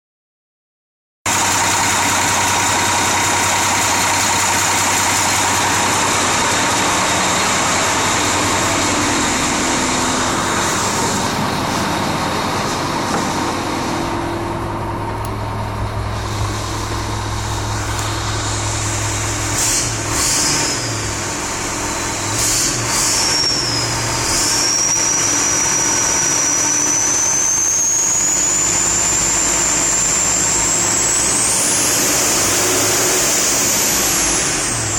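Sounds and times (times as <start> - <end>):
diesel engine low hum: 1.3 - 34.9
turbocharger whistle: 16.2 - 34.9.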